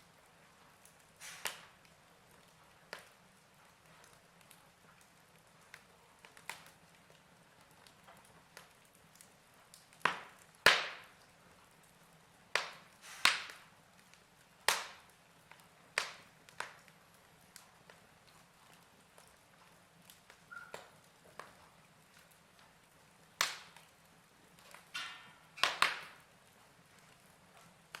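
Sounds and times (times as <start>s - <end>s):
faint hiss: 0.0s - 1.8s, 12.8s - 13.8s
fire crackling and popping: 0.0s - 28.0s.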